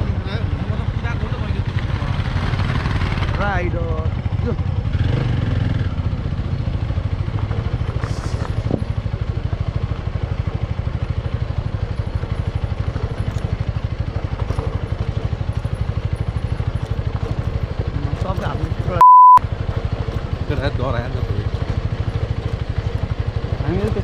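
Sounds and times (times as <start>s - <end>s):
motorbike engine running: 0.0s - 24.0s.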